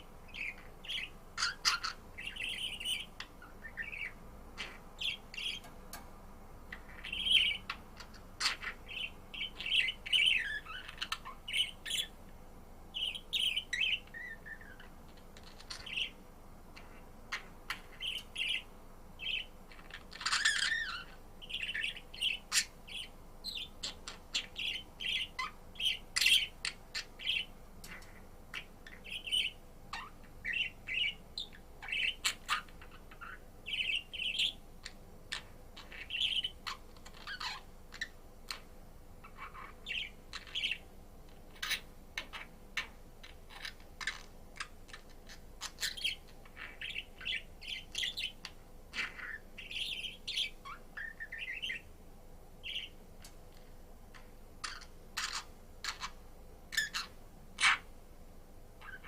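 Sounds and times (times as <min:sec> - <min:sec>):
budgerigar chirping: 0:00.0 - 0:05.7, 0:06.7 - 0:12.2, 0:13.0 - 0:16.2, 0:16.8 - 0:51.9, 0:52.6 - 0:53.0, 0:54.1 - 0:57.9, 0:58.8 - 0:59.0.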